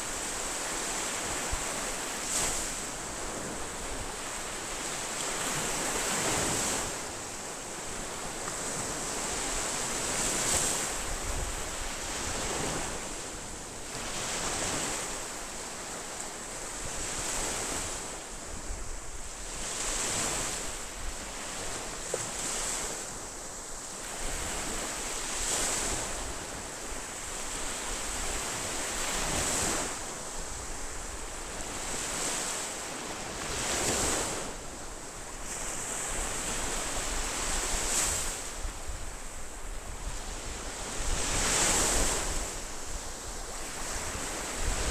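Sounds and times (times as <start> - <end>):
surf washing: 17.2 - 44.9.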